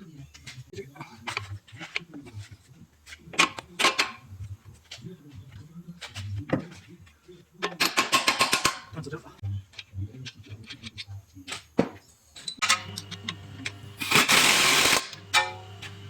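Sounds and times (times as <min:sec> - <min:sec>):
hand tools clanking on metal: 0:07.6 - 0:09.0, 0:12.4 - 0:15.6.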